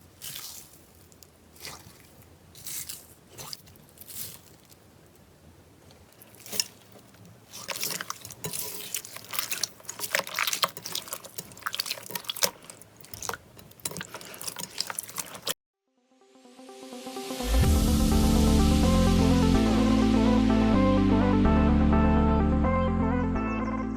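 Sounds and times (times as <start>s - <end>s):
slime squished by hand: 0.0s - 4.8s, 6.0s - 15.5s.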